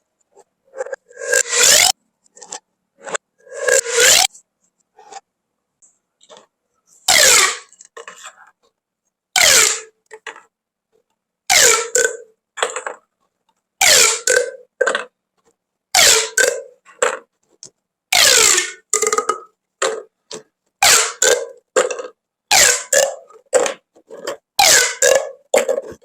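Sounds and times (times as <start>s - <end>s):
plastic pop tubes rasping: 7.1s - 8.5s, 9.4s - 10.5s, 11.5s - 13.0s, 13.8s - 26.0s.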